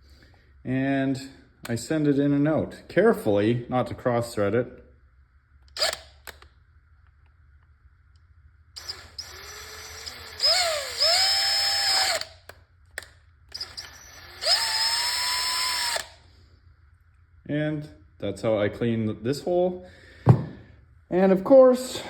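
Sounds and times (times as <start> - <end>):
power drill turning screw: 5.7 - 6.4, 8.8 - 16.2.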